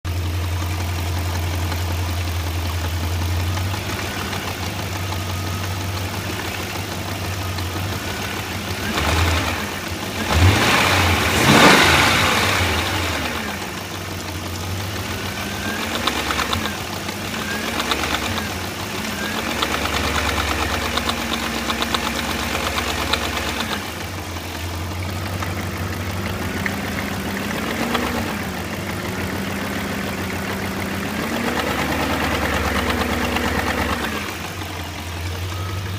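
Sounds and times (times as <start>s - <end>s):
car engine idling and revving: 0.0s - 35.9s.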